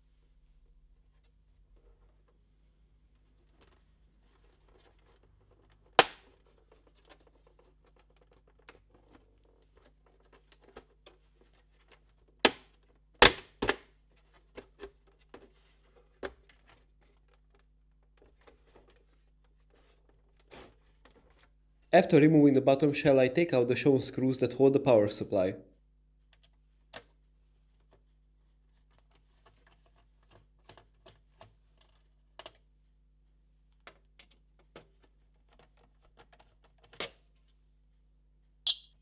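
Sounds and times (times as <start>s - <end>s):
plastic shell snapping: 6.0s - 6.2s.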